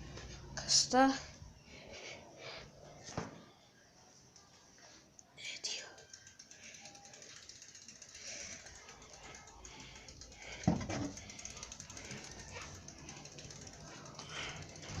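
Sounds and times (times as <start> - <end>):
bike freewheel hub clicking: 6.0 - 15.0.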